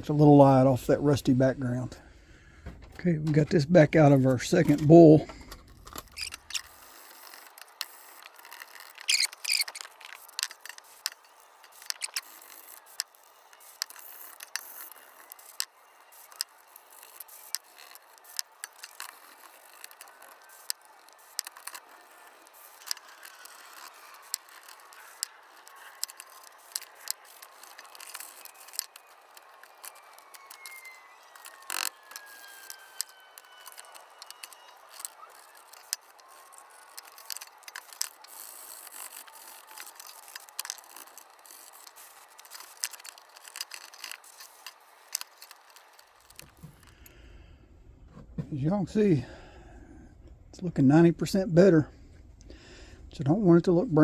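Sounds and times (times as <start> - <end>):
faint squeak: 6.1 - 10.3, 16.0 - 40.2
wire brush scrubbing metal: 6.2 - 46.2.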